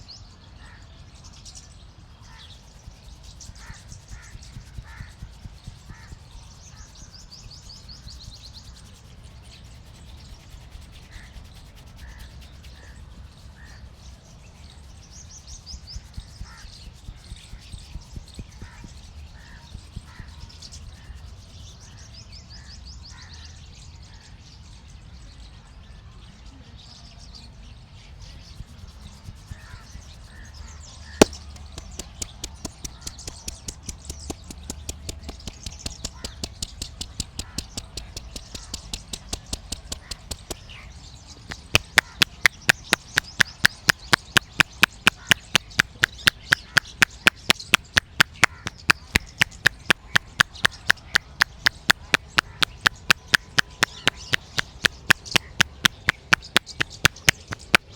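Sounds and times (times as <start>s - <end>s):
hands slapping head rhythmically: 31.2s - 40.7s, 41.4s - 57.9s.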